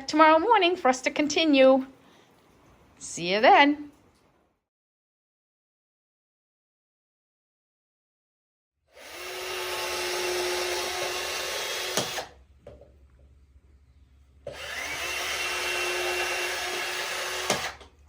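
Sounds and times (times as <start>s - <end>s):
power drill whining: 9.0s - 12.4s, 14.5s - 18.0s.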